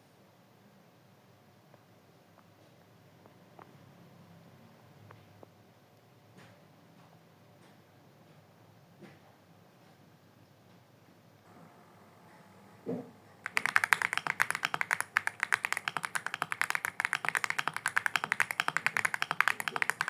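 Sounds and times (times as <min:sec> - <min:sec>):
computer keyboard typing: 0:13.4 - 0:20.0.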